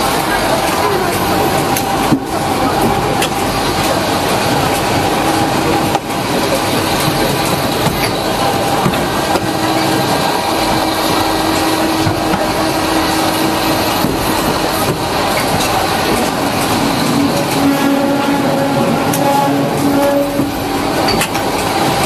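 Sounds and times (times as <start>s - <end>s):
industrial machinery running: 0.0s - 22.0s
higher hum: 8.5s - 21.2s.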